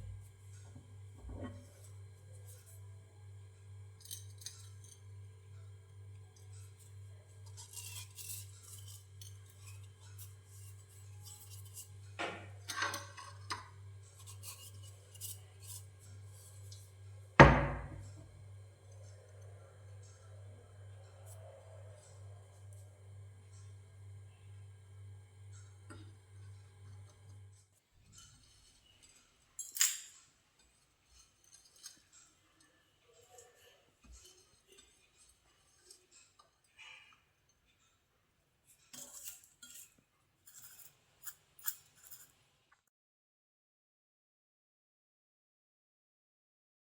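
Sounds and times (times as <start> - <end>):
utensils and dishes clinking: 3.9 - 5.1, 6.2 - 20.3, 28.0 - 37.9, 38.7 - 42.4
sharp knock with ring: 17.4 - 18.0.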